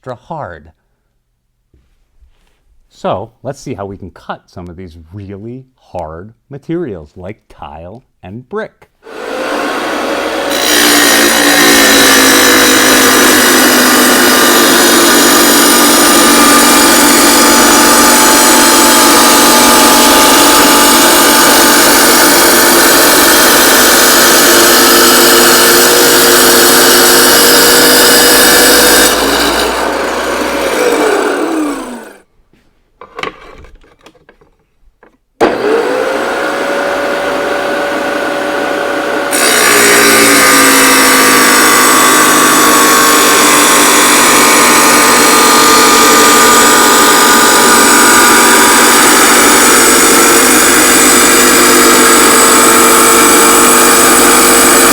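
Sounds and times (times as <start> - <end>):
saw grinding tile: 9.0 - 32.2, 35.5 - 54.9
wet saw motor whine: 9.1 - 32.2, 35.4 - 54.9.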